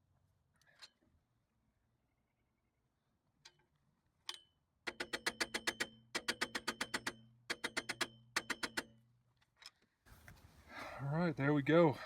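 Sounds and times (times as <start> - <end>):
metal jack ringing: 4.3 - 9.0.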